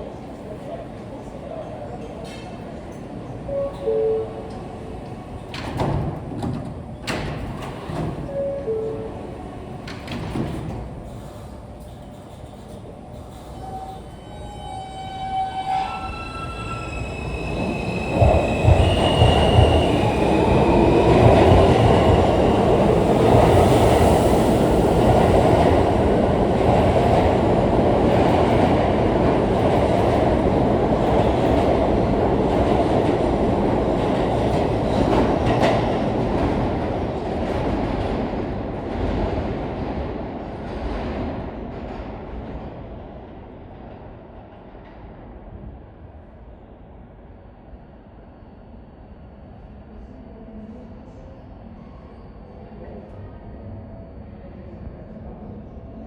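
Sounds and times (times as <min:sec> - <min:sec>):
train wheels clacking on rails: 0:16.8 - 0:38.3.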